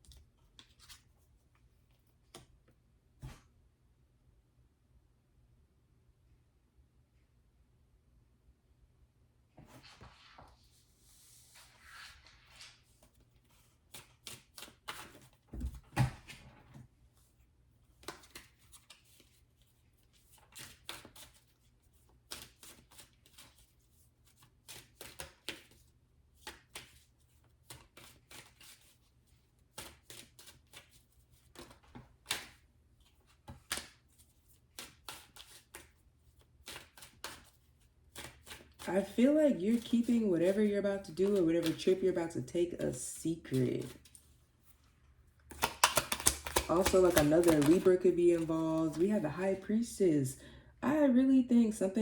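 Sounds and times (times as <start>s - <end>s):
cards sliding shuffle: 9.7s - 15.4s, 18.0s - 19.4s, 29.6s - 42.1s, 42.8s - 44.8s, 45.5s - 49.0s
cards snapping and tapping: 18.0s - 19.2s, 24.7s - 25.8s, 31.5s - 32.6s, 33.3s - 34.0s, 34.6s - 35.9s, 36.6s - 38.9s, 45.5s - 49.0s.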